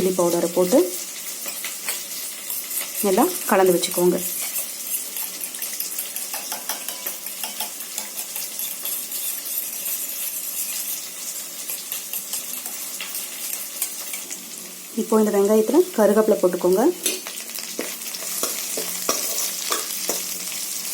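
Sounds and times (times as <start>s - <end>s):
food sizzling in oil: 0.0s - 20.9s
metal spoon clinking and scraping: 1.2s - 14.4s, 17.0s - 20.5s.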